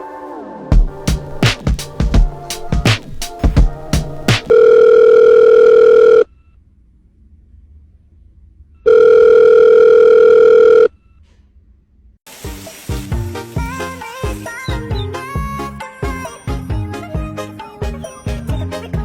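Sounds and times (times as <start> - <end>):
music track with a beat: 0.7 - 4.5, 12.5 - 19.0
telephone ringing tone beeps: 4.5 - 6.3, 8.9 - 10.9.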